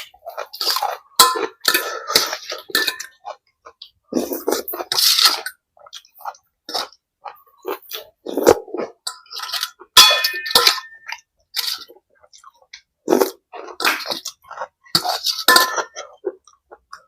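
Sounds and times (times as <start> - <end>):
spoon clinking against bowl: 10.0 - 11.1.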